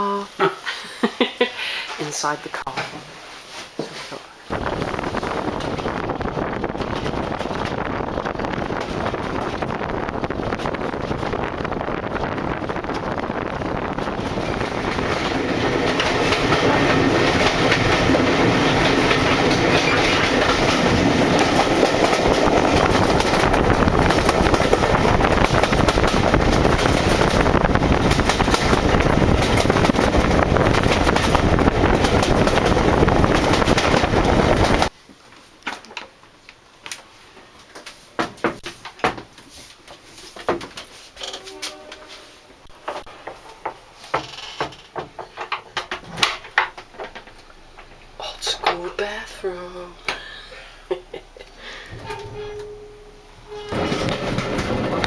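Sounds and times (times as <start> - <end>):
train wheels on rails: 3.8 - 35.0, 51.8 - 55.0
diesel train engine: 4.5 - 34.9, 46.7 - 55.0.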